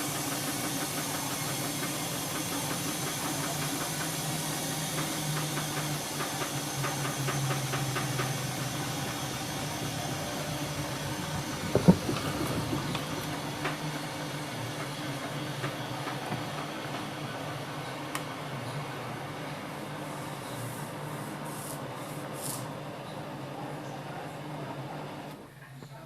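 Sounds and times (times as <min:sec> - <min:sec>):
washing machine motor hum: 0:00.0 - 0:20.4
loud knock: 0:11.5 - 0:13.2.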